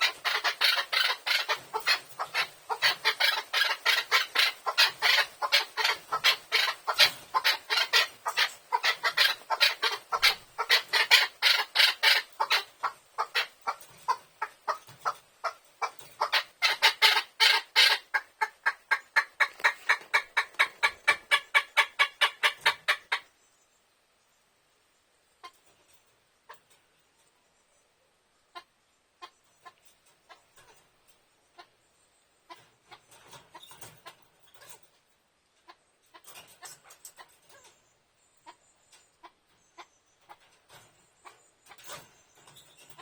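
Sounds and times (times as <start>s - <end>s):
partridge rapid clucking call: 0.0s - 23.3s.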